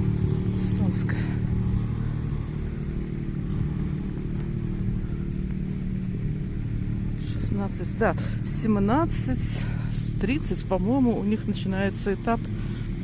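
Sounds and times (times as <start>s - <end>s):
rally car engine idling: 0.0s - 13.0s.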